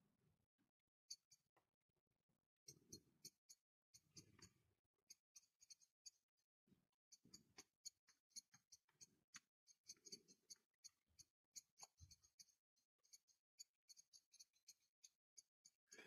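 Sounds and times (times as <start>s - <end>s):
small clicks and scratches: 2.7s - 6.4s, 7.1s - 16.0s.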